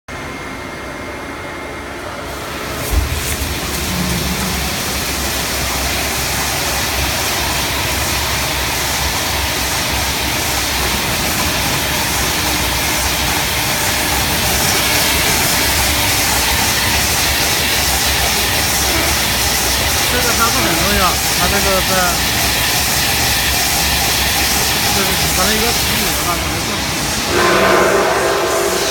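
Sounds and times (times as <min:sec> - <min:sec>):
rewinding machine whirring: 0:01.8 - 0:28.9.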